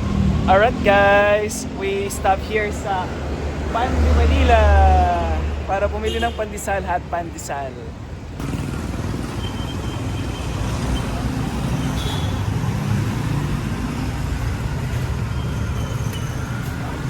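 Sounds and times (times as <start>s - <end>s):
road traffic rumble: 0.0s - 17.0s.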